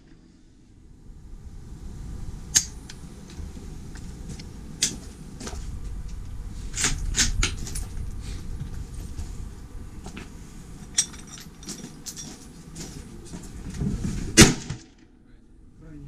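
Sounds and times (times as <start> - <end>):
low rumble: 0.0 - 12.0.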